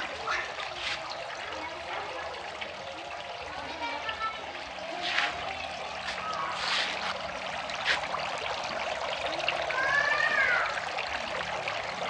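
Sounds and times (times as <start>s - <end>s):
water pouring into a pond: 0.0s - 12.0s
water splashes: 0.0s - 12.0s.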